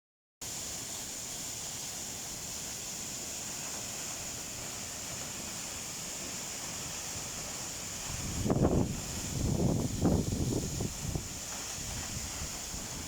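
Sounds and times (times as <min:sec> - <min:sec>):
waterfall rushing: 0:00.4 - 0:13.0
wind buffeting microphone: 0:08.0 - 0:13.0.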